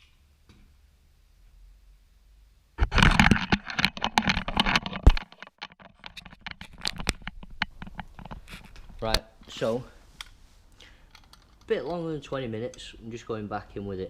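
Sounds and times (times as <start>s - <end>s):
metal tools clattering: 11.0s - 12.1s.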